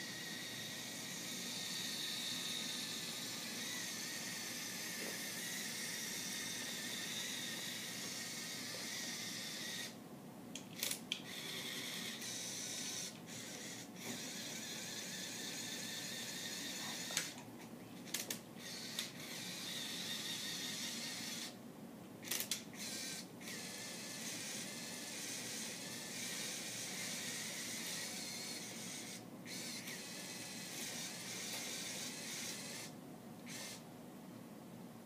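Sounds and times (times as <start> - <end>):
electric motors whirring through gears: 0.0 - 10.0, 10.8 - 17.4, 18.0 - 21.6, 22.2 - 33.8.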